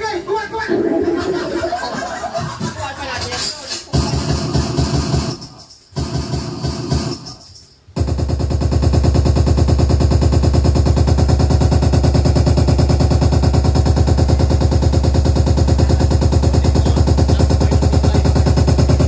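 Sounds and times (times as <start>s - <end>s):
choppy musical phrase: 0.5s - 2.5s
rapid heavy bass hits: 4.0s - 5.4s, 8.0s - 19.0s.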